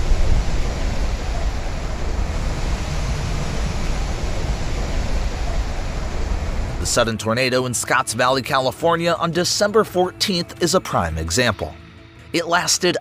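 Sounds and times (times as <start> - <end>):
deep rumble: 0.0 - 7.2
steady rushing noise: 0.0 - 8.6.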